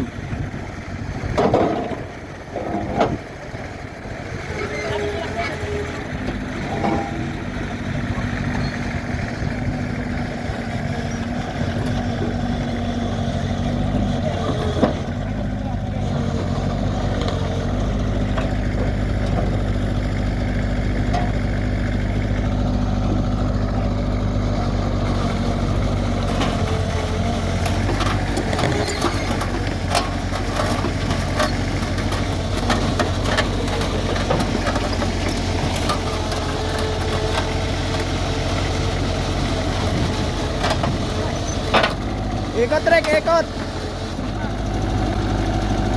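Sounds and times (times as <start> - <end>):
diesel engine running: 0.0 - 45.9
metallic clanks and knocks: 1.3 - 3.2, 6.2 - 7.6, 26.2 - 38.1.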